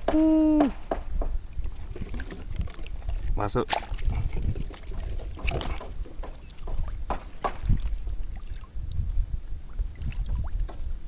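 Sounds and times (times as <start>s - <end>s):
water splashes: 0.0s - 11.0s
wind on microphone: 0.0s - 11.0s
lapping water: 1.5s - 9.1s.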